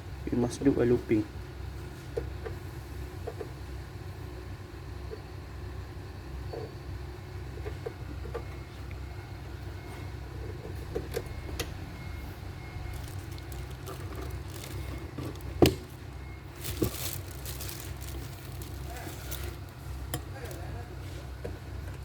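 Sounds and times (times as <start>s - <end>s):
steady low rumble: 12.0s - 20.4s.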